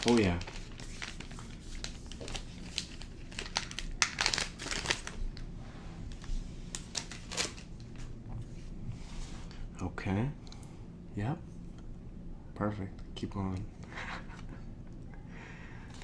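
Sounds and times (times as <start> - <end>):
foil wrapper crinkling: 0.0 - 5.4, 6.2 - 7.9.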